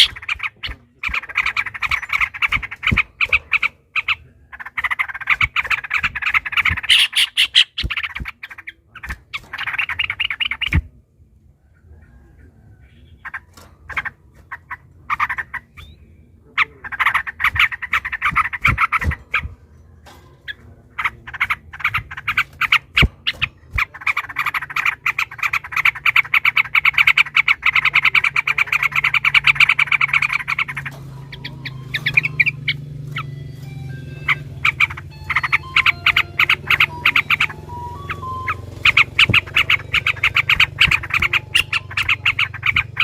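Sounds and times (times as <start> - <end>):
bird whistles: 0.0 - 2.6, 4.8 - 8.4, 28.8 - 43.0
birds chattering: 0.0 - 43.0.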